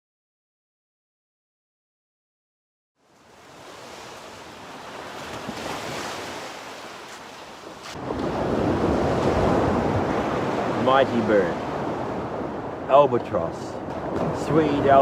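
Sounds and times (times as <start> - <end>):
ocean waves washing: 3.0 - 15.0.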